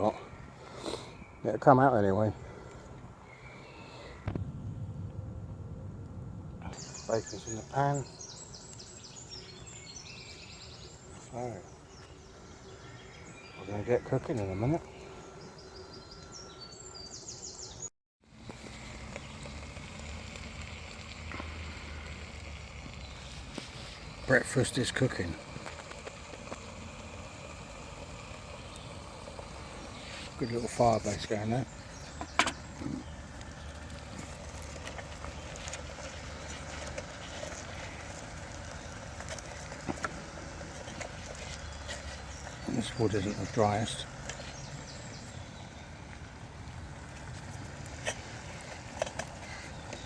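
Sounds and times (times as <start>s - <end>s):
twig fire crackling: 3.9s - 15.8s, 18.2s - 50.0s
low rumble: 4.2s - 6.8s
small bird chirping: 6.7s - 17.9s, 19.0s - 46.2s
bacon sizzling in a pan: 18.6s - 31.3s.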